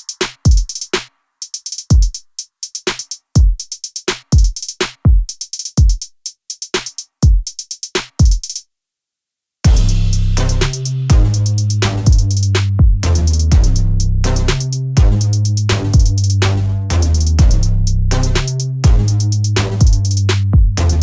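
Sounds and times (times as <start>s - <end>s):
drum machine beat: 0.0s - 8.6s, 9.7s - 21.0s
hi-hat ticks: 0.0s - 8.6s, 9.8s - 21.0s
electronic music with steady bass: 9.7s - 21.0s.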